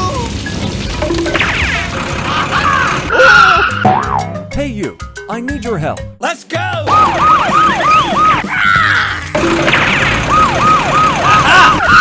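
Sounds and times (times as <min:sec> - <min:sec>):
siren wailing: 0:06.9 - 0:12.0.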